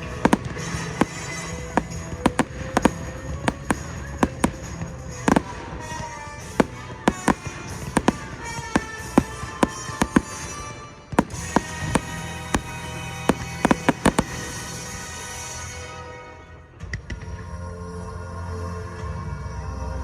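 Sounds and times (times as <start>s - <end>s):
fireworks banging: 0.0s - 15.3s.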